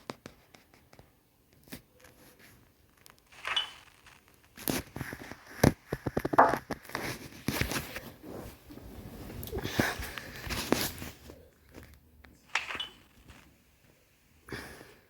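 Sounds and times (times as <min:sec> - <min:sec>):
objects rustling and clicking: 0:00.0 - 0:14.0.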